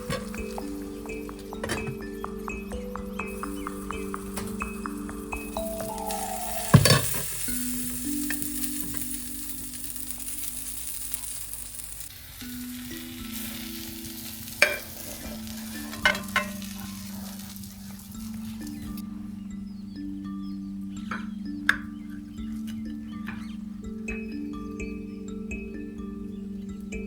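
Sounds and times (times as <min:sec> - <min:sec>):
food sizzling in a pan: 0:03.2 - 0:18.9
utensil knocking against pan: 0:06.7 - 0:07.3.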